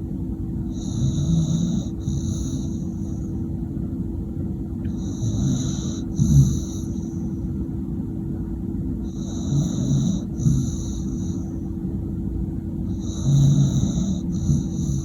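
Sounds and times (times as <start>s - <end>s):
dog snoring: 0.7s - 3.3s, 4.8s - 7.5s, 9.0s - 11.7s, 12.9s - 15.0s.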